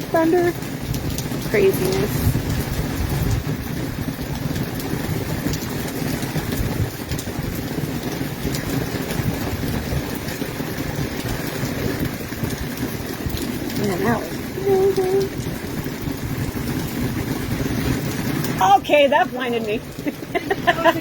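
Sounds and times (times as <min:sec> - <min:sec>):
heavy rain pouring: 0:00.0 - 0:21.0
deep low rumble: 0:10.8 - 0:21.0.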